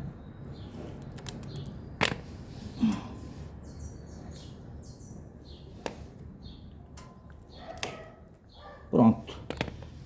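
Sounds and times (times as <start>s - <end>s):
birds chirping faintly: 0.0s - 10.0s.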